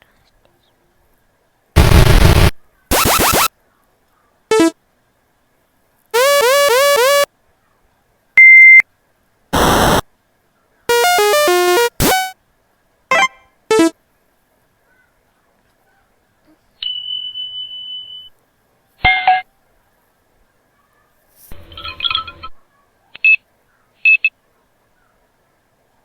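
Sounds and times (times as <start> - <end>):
burst of electronic noise: 1.8 - 3.5, 4.5 - 4.7, 6.2 - 7.3, 9.6 - 10.0, 10.9 - 12.3, 13.2 - 13.9
electronic beeps: 1.8 - 3.5, 4.5 - 4.7, 6.2 - 7.3, 10.9 - 12.3, 13.1 - 13.9
short electronic blips: 1.8 - 3.5, 4.5 - 4.7, 6.2 - 7.3, 9.6 - 10.0, 10.9 - 12.3, 13.1 - 13.9
stepped note runs rising sweep: 1.8 - 3.5.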